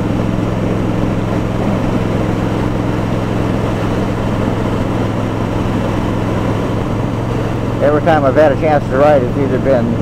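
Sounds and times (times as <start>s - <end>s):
motorcycle engine droning: 0.0s - 10.0s.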